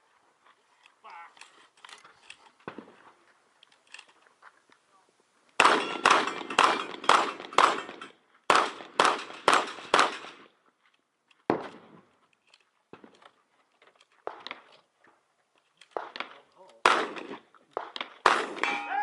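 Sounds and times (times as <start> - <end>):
gunshots: 5.6 - 10.4, 16.0 - 19.0.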